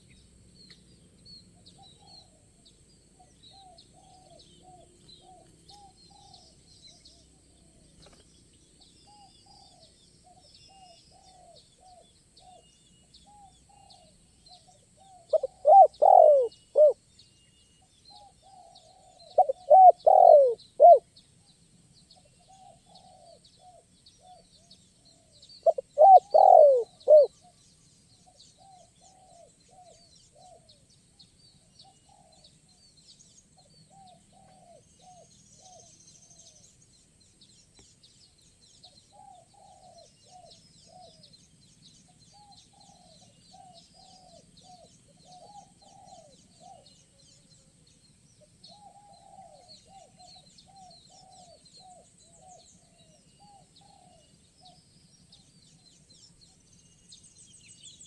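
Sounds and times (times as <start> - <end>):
small birds chirping: 0.0 - 58.0
doves cooing: 15.3 - 17.0, 19.0 - 21.0, 25.6 - 27.3.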